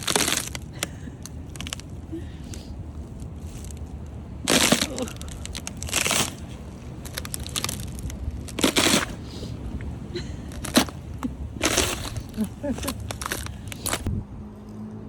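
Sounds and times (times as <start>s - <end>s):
crunching footsteps: 0.0s - 0.9s, 10.5s - 14.1s
low background rumble: 0.0s - 14.4s.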